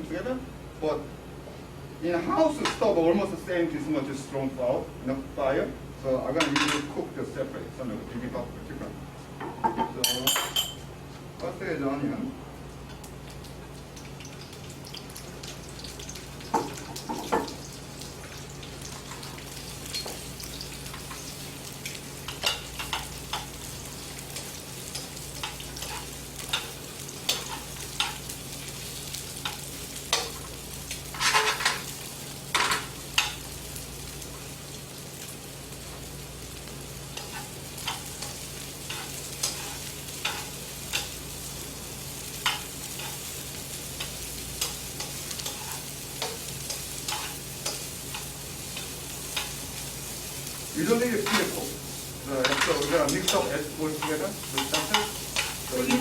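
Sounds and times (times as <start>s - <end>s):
onion sizzling in oil: 12.9s - 56.0s.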